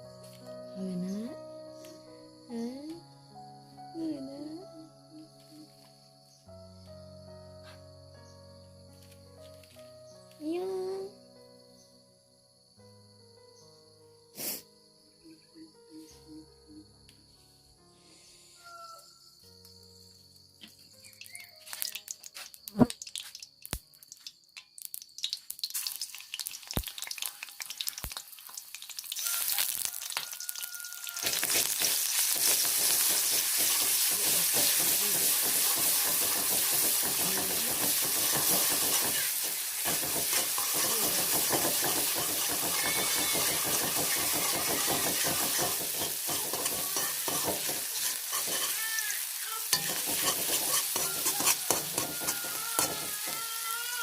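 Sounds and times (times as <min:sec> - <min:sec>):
food sizzling in hot oil: 0:21.0 - 0:54.0.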